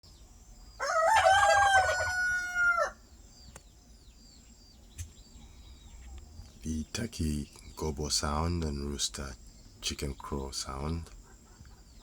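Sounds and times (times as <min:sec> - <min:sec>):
rooster crowing: 0:00.8 - 0:03.0.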